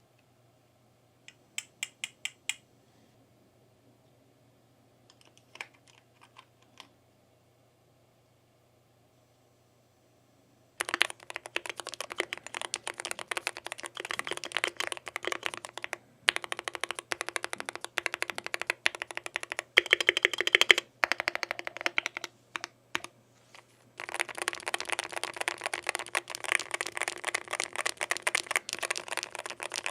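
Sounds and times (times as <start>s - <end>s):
keyboard keystroke clacks: 10.8s - 23.1s.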